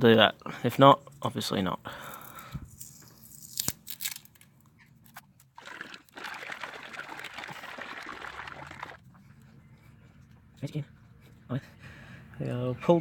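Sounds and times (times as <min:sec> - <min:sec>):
liquid sloshing in shaken tin: 0:05.6 - 0:09.0.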